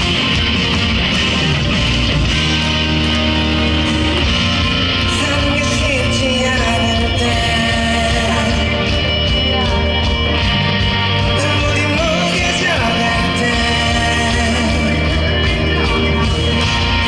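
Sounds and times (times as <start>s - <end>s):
instrumental accompaniment: 0.0s - 17.0s
man singing: 5.0s - 10.4s, 11.2s - 17.0s.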